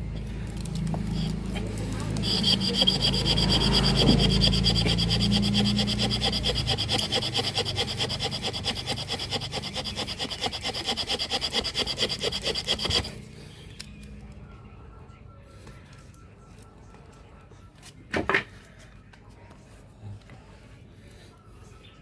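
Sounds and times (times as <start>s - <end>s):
bamboo rasping with high squeal: 0.1s - 13.7s.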